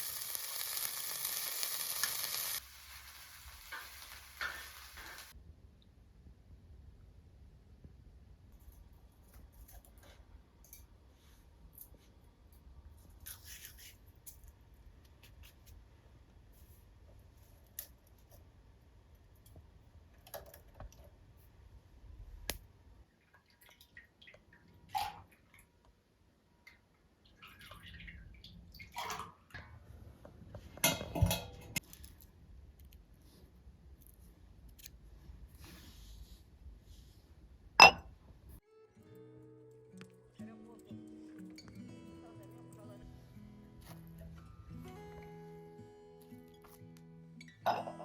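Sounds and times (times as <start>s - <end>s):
light kitchen clicks and knocks: 30.6s - 31.8s.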